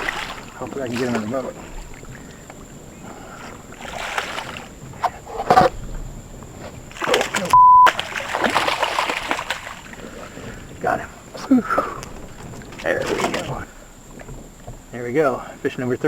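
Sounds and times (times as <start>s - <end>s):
fish splashing in water: 0.0s - 15.6s
censor bleep: 7.5s - 7.9s.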